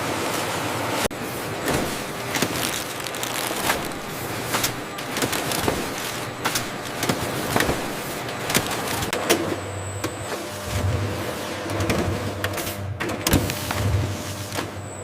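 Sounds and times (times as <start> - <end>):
sharp cracks and clicks: 2.2 - 7.9.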